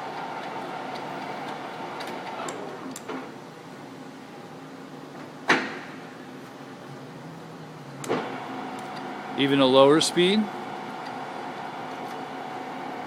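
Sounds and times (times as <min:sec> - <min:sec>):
lathe gear hum: 0:00.0 - 0:02.7, 0:07.6 - 0:13.0.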